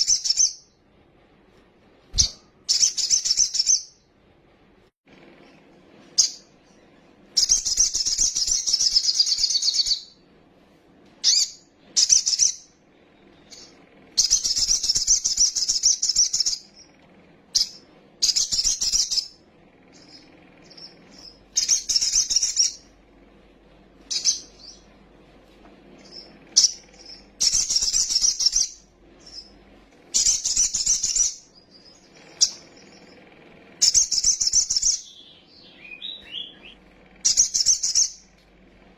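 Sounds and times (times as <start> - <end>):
sunbird chattering chirps: 17.6 - 22.8, 26.0 - 29.5, 33.8 - 38.2.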